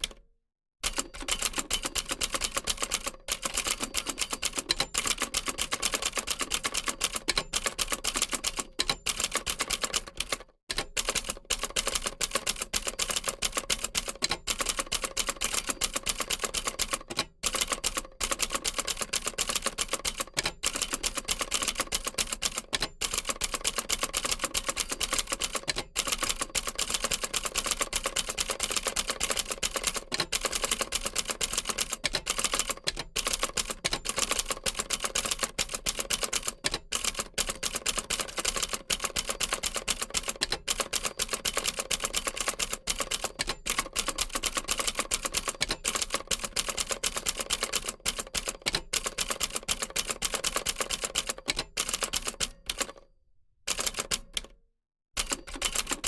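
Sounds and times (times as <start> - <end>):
typewriter key clacks: 22.2 - 53.0, 53.7 - 54.5, 55.2 - 56.0.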